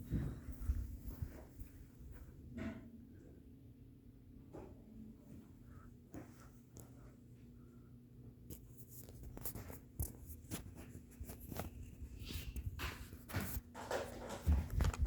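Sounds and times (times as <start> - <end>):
ceiling fan motor hum: 0.0 - 15.0
fan clicks and swishes: 8.5 - 15.0.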